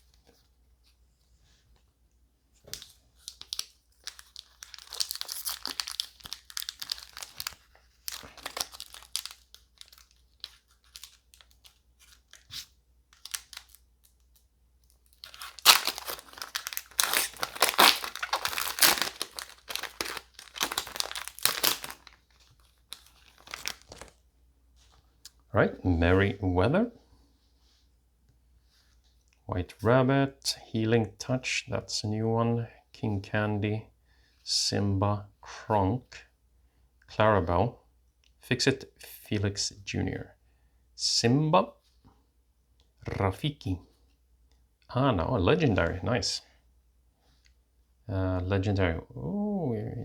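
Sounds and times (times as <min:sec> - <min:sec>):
wrapper tearing and crinkling: 0:02.7 - 0:14.3, 0:15.0 - 0:24.2.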